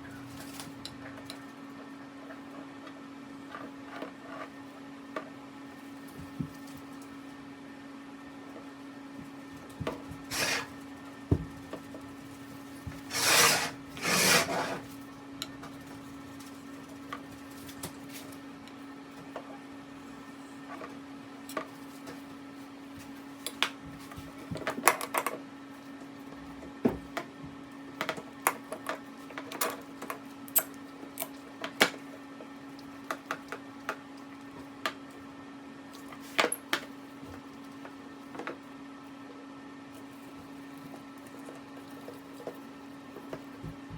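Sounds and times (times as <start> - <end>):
steady low hum: 0.0 - 24.8
scraping strokes: 10.3 - 10.7, 13.0 - 14.9.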